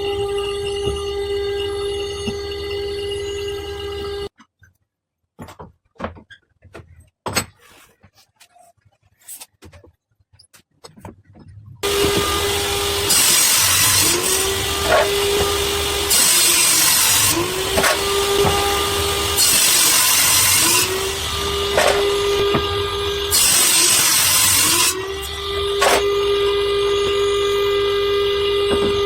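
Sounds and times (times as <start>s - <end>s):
woodworking power tool cutting wood: 11.8s - 29.0s.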